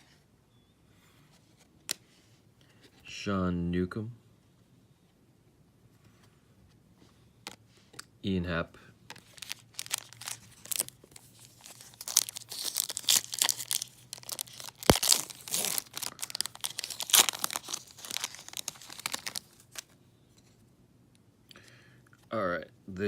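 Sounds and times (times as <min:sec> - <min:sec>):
foil wrapper tearing and crinkling: 0:09.2 - 0:19.9.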